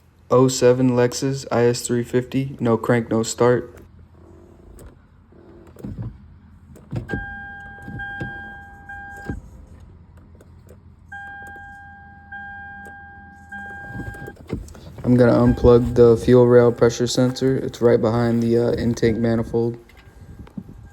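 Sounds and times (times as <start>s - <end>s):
car electronic warning tone: 6.9s - 9.6s, 11.1s - 20.9s.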